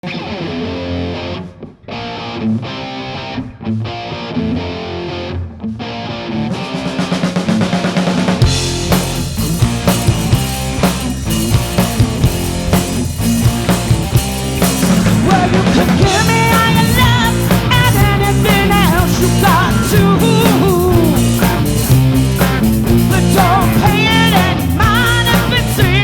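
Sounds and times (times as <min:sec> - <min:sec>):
live rock band playing: 0:00.1 - 0:26.0
drum build: 0:06.5 - 0:26.0.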